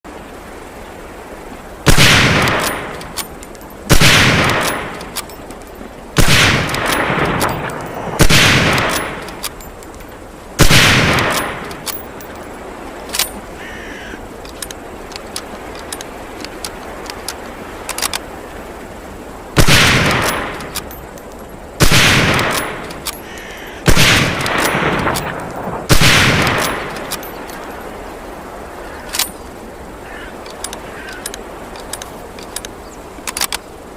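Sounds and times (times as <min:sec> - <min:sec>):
rifle shots with ringing echo: 0:01.9 - 0:03.2, 0:03.9 - 0:05.2, 0:06.2 - 0:09.4, 0:10.6 - 0:12.0, 0:19.6 - 0:20.8, 0:21.8 - 0:23.0, 0:23.9 - 0:27.2
faint clicks: 0:02.4 - 0:03.8, 0:04.4 - 0:06.0, 0:08.7 - 0:10.3, 0:11.1 - 0:18.4, 0:20.0 - 0:21.6, 0:22.3 - 0:25.8, 0:26.4 - 0:27.8, 0:28.8 - 0:33.9.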